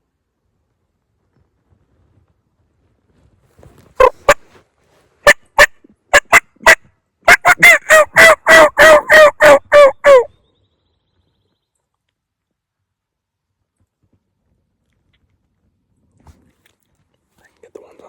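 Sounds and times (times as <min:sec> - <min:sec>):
turkey yelping: 0:04.0 - 0:04.4, 0:05.2 - 0:10.4.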